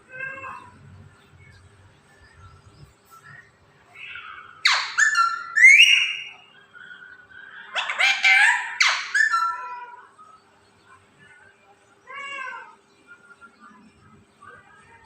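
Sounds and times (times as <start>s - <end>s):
cat meowing: 0.1s - 0.8s, 12.1s - 12.8s.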